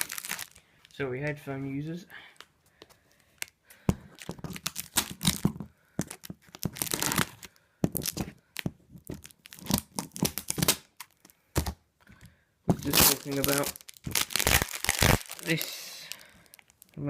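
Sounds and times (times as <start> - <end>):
packaging being torn: 0.0 - 0.6, 4.5 - 5.4, 6.0 - 8.2, 9.2 - 11.3, 12.8 - 17.0
packaging crinkling: 0.0 - 0.7, 3.4 - 11.3, 12.7 - 17.0.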